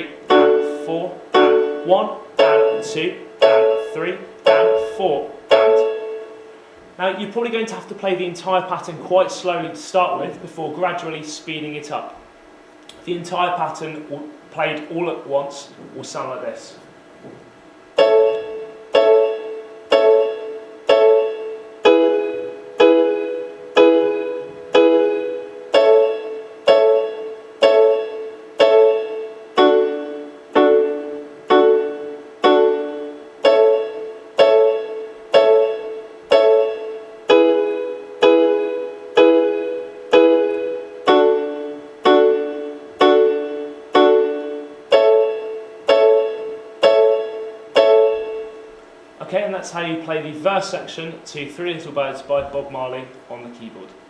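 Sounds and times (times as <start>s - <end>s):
keyboard piano reggae chords: 0.0s - 11.1s, 12.9s - 50.8s.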